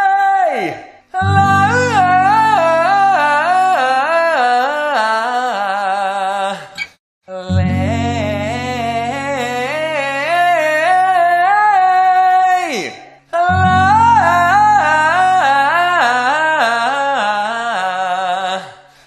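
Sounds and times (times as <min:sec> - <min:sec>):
person singing vocal warm-up: 0:00.0 - 0:19.0
held low chord: 0:01.2 - 0:04.0, 0:07.6 - 0:10.5, 0:13.5 - 0:15.8.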